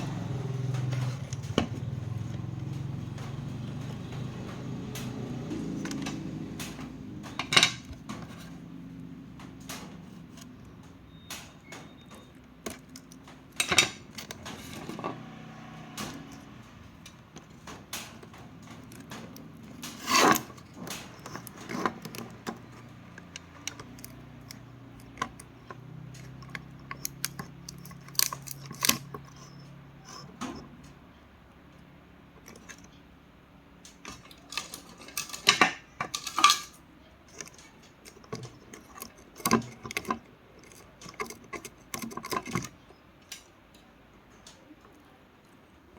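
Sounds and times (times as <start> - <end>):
small hard objects clicking: 16.3 - 29.8.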